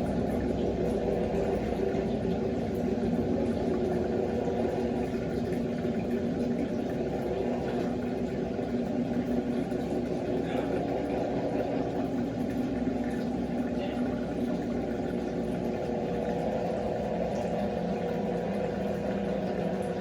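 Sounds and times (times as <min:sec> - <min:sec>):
washing machine motor hum: 0:00.0 - 0:20.0.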